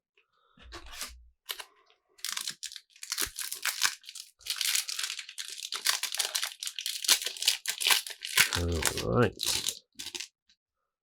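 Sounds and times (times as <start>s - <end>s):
foil wrapper crinkling and tearing: 2.2s - 10.3s.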